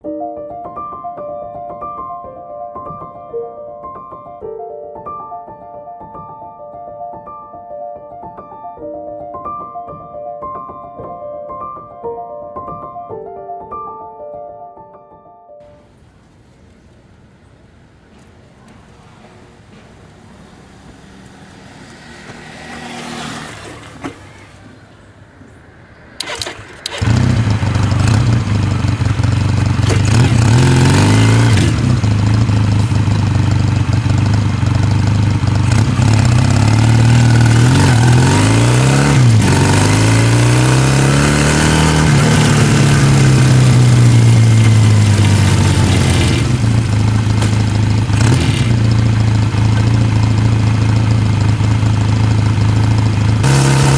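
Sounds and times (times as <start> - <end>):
vehicle engine revving: 18.2 - 25.5, 26.1 - 53.9.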